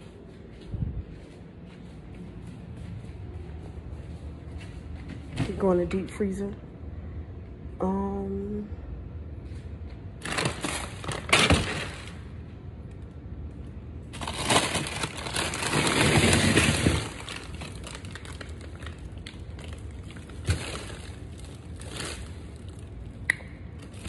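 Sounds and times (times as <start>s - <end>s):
frozen packages crunching and clattering: 10.1s - 12.4s, 14.0s - 23.1s, 23.8s - 24.0s.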